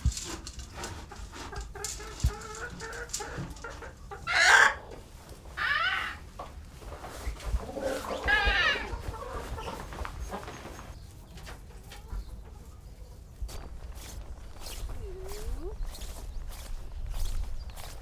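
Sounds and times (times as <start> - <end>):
rustles and clicks: 0.0 - 4.2, 6.3 - 18.0
chicken squawking: 3.8 - 6.3, 7.6 - 10.5.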